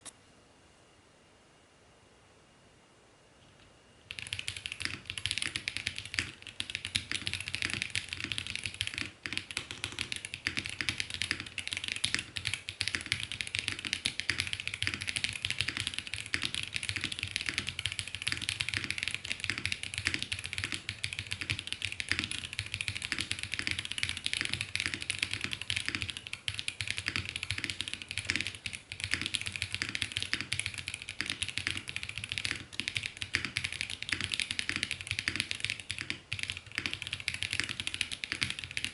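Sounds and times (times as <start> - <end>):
mechanical keyboard typing: 4.1 - 38.9.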